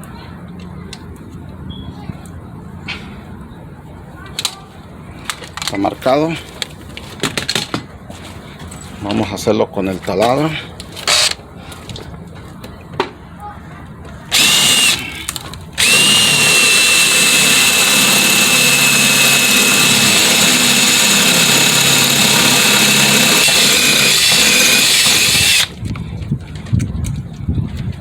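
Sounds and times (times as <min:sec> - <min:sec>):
electric drill whining: 0:11.0 - 0:11.4, 0:14.3 - 0:15.2, 0:15.8 - 0:25.7.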